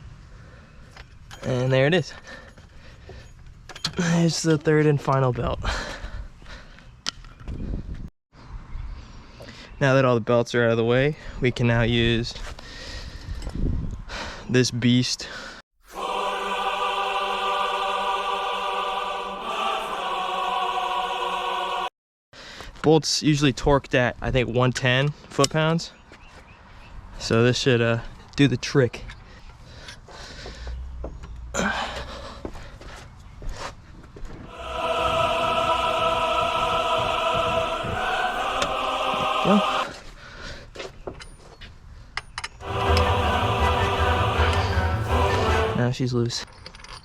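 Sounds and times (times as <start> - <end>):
choir singing ahh chord: 15.8 - 21.9, 34.5 - 40.0, 42.6 - 45.8.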